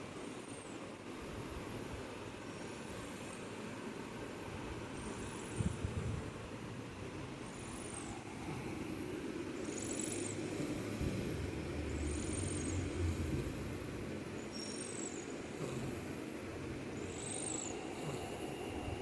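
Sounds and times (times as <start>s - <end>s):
cat snoring wheezily: 4.9s - 6.0s, 7.4s - 19.0s
steady low rumble: 8.0s - 14.4s.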